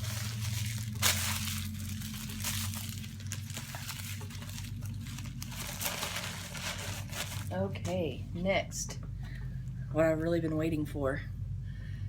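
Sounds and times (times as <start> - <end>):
plastic packaging crinkling: 0.0 - 7.6
steady low hum: 0.0 - 12.0.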